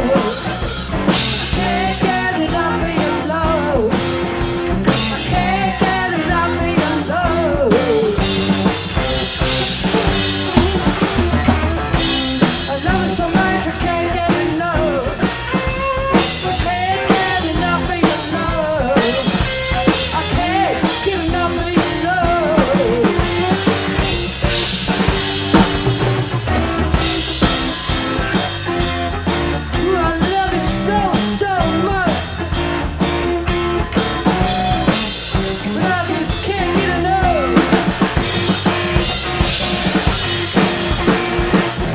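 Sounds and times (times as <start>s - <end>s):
drum kit beat: 0.0s - 41.9s
rock band instrumental: 0.0s - 41.9s
lead melody with bending notes: 8.2s - 14.5s.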